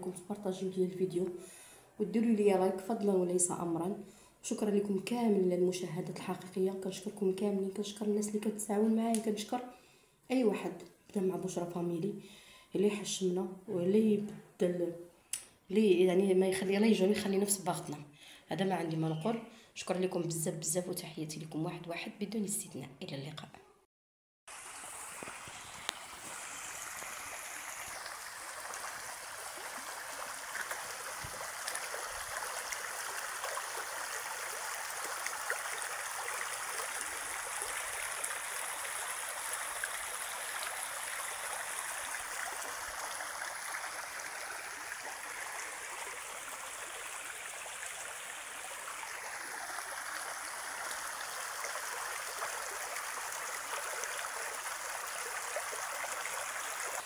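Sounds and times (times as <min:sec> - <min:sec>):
flowing water rushing: 0:24.5 - 0:57.0.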